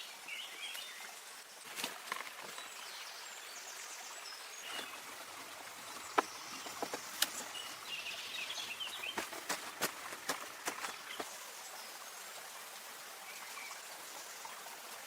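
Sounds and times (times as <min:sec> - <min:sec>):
rushing water: 0:00.0 - 0:15.0
birds chirping: 0:02.3 - 0:12.0.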